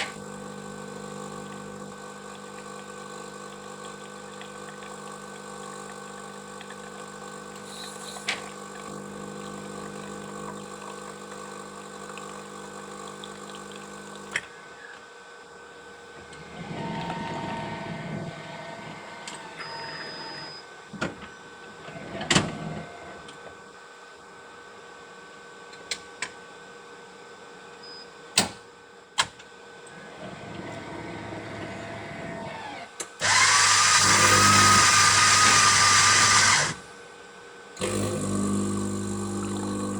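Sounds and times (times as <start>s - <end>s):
coffee machine whirring: 0.0s - 15.1s, 15.7s - 23.6s, 29.8s - 37.0s, 37.8s - 39.9s
coffee machine electric hum: 0.0s - 39.9s
loud noisy whirring: 30.8s - 36.8s.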